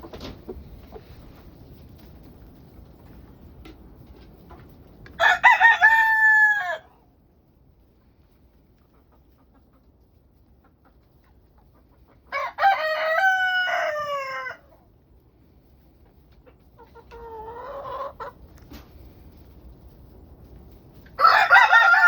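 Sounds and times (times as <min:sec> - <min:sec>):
rooster crowing: 0:05.2 - 0:06.9, 0:12.3 - 0:14.6, 0:21.2 - 0:22.0.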